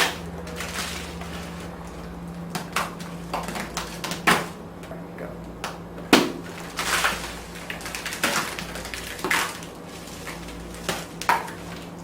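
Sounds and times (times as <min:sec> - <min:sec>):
wet splats on a person: 0:06.2 - 0:06.5.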